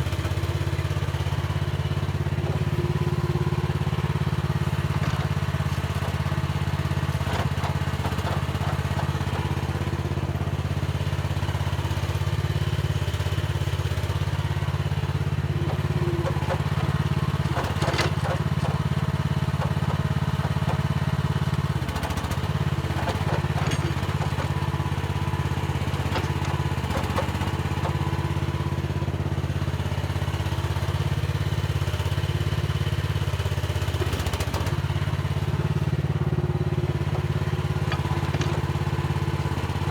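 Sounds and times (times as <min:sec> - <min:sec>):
diesel engine running: 0:00.0 - 0:39.9
metal clanks and scrapes: 0:04.8 - 0:06.1, 0:15.7 - 0:19.0, 0:23.0 - 0:24.7, 0:25.9 - 0:27.8, 0:37.0 - 0:39.3.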